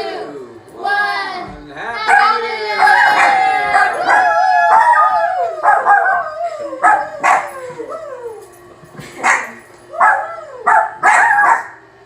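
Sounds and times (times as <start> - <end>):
dog howling: 2.0 - 11.8
dog barking and yipping: 2.1 - 5.0, 6.8 - 7.7, 9.2 - 11.8.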